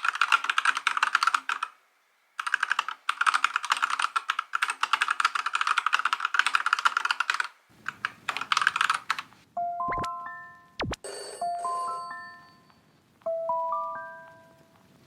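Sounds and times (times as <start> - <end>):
mechanical keyboard typing: 0.0 - 1.8, 2.4 - 9.3
chiming tones: 9.6 - 14.7.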